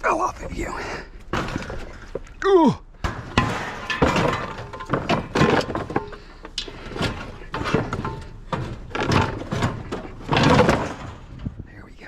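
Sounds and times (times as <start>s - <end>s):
scrap knocking and clattering: 3.0s - 11.7s
rattling scrapes: 3.1s - 11.8s.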